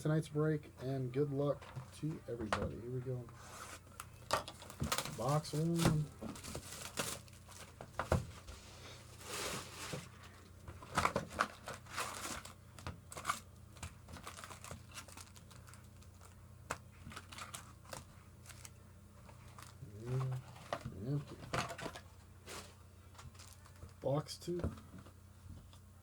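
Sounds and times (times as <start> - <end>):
foil packs crinkling: 3.8 - 8.2, 8.8 - 24.0
plastic wrapping tearing: 4.6 - 7.8, 10.9 - 16.4, 17.0 - 18.7.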